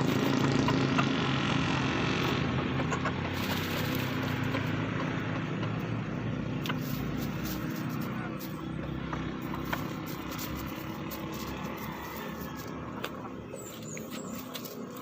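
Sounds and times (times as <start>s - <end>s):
low engine hum: 0.0s - 15.0s.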